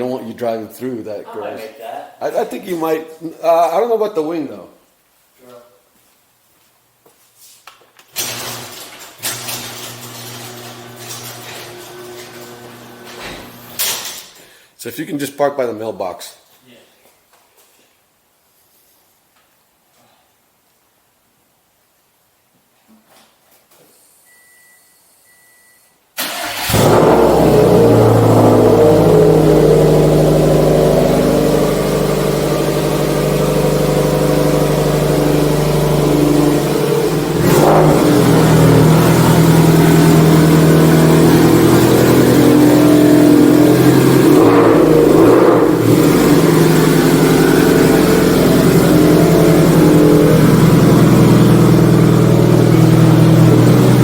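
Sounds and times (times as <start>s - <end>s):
car exhaust running loud: 26.7s - 54.0s.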